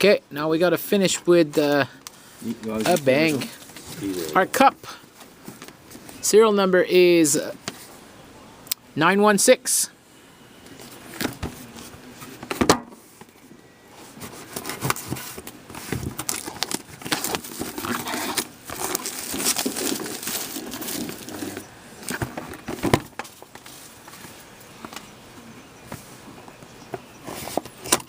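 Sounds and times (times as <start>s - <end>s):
plastic packaging crinkling and tearing: 14.4s - 22.2s.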